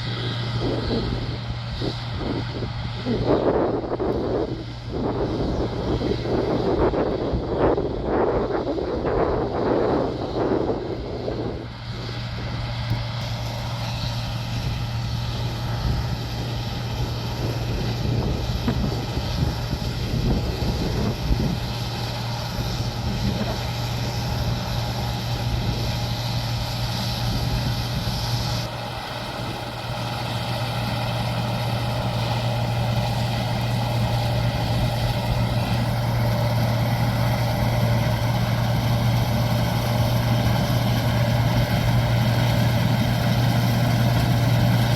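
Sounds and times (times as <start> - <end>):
farm machinery engine humming: 0.0 - 44.9
steady machine whines: 0.0 - 44.9.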